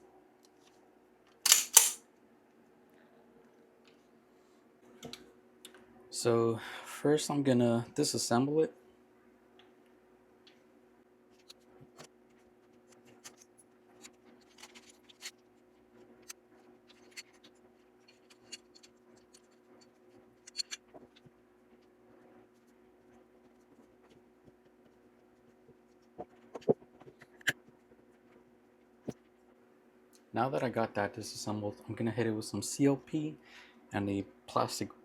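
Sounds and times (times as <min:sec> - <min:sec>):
pistol metallic clicks and scrapes: 0:01.5 - 0:02.0, 0:16.2 - 0:21.1.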